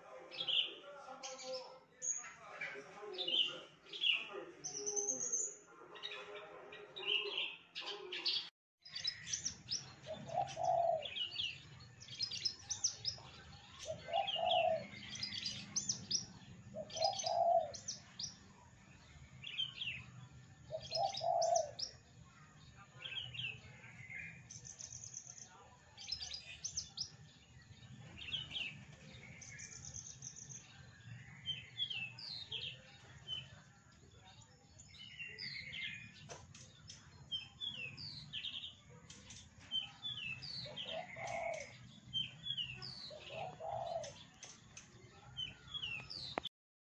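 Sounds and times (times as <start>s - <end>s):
lark singing chirps and trills: 34.3s - 44.9s.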